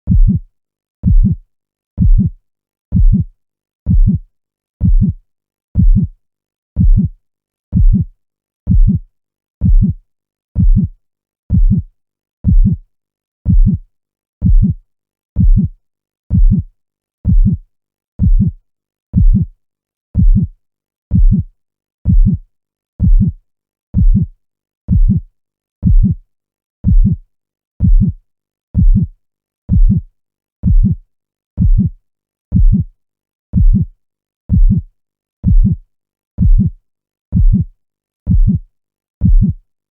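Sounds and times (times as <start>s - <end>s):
heartbeat thuds: 0.1s - 0.4s, 1.0s - 1.4s, 2.0s - 2.3s, 2.9s - 3.3s, 3.9s - 4.2s, 4.8s - 5.2s, 5.8s - 6.1s, 6.8s - 7.1s, 7.7s - 8.1s, 8.7s - 9.0s, 9.6s - 10.0s, 10.6s - 10.9s, 11.5s - 11.8s, 12.4s - 12.8s, 13.5s - 13.8s, 14.4s - 14.8s, 15.4s - 15.7s, 16.3s - 16.7s, 17.3s - 17.6s, 18.2s - 18.6s, 19.2s - 19.5s, 20.2s - 20.5s, 21.1s - 21.5s, 22.1s - 22.4s, 23.0s - 23.4s, 24.0s - 24.3s, 24.9s - 25.2s, 25.8s - 26.2s, 26.8s - 27.2s, 27.8s - 28.2s, 28.8s - 29.1s, 29.7s - 30.0s, 30.6s - 31.0s, 31.6s - 31.9s, 32.5s - 32.9s, 33.5s - 33.9s, 34.5s - 34.8s, 35.4s - 35.8s, 36.4s - 36.7s, 37.3s - 37.7s, 38.3s - 38.6s, 39.2s - 39.6s.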